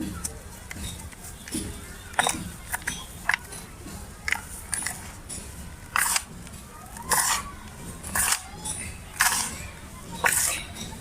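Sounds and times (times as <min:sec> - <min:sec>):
gritty crunches of crumbling cement: 0:05.8 - 0:07.4.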